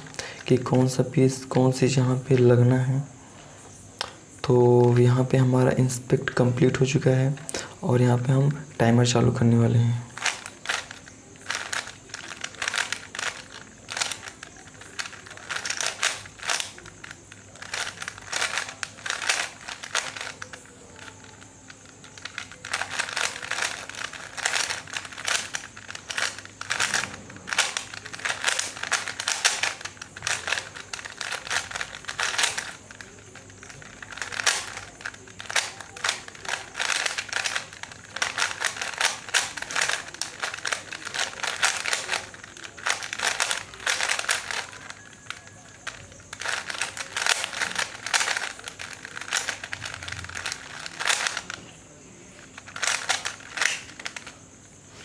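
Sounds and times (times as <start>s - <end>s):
puzzle cube clicking: 10.1s - 51.7s, 52.4s - 54.4s.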